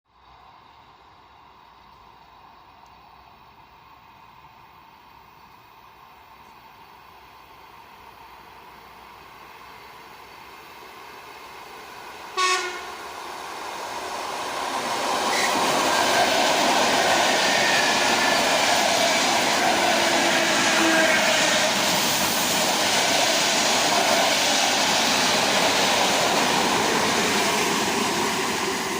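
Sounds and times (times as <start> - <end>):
electric train approaching: 0.1 - 28.9
wheel and rail noise: 0.1 - 28.9
train horn blast: 12.4 - 13.0, 20.2 - 21.6.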